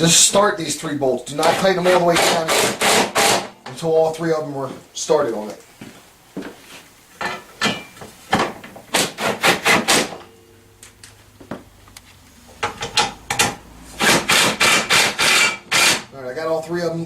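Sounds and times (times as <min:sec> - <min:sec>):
metallic knocks and clicks: 0:12.6 - 0:13.6.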